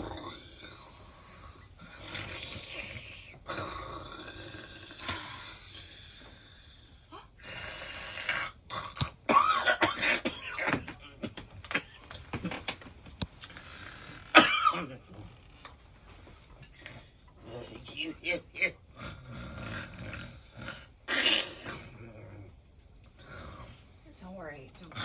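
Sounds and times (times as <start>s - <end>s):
throat clearing: 9.0s - 12.0s, 14.3s - 15.1s
person coughing: 9.3s - 12.0s, 14.4s - 15.0s.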